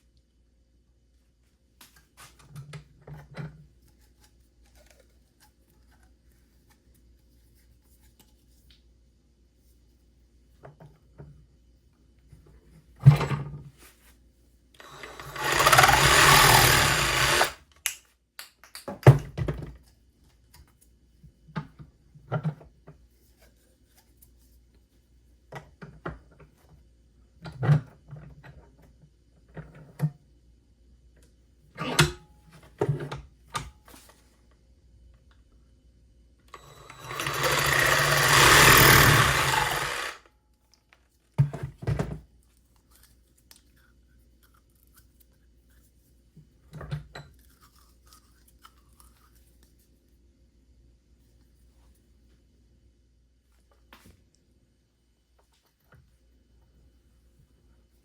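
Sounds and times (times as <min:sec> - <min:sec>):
cutting plastic conduit: 0:14.8 - 0:17.6, 0:36.6 - 0:40.2.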